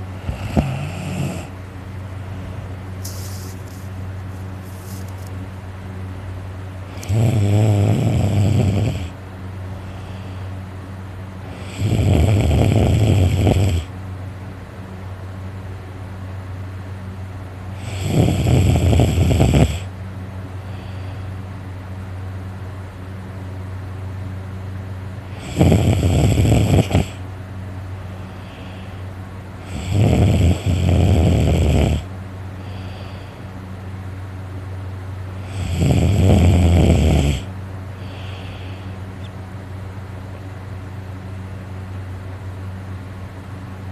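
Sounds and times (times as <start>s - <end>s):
person snoring loudly: 0.0s - 1.6s, 6.9s - 9.2s, 11.5s - 13.9s, 17.8s - 19.9s, 25.3s - 27.2s, 29.6s - 33.2s, 35.4s - 38.8s
steady low hum: 0.0s - 43.9s.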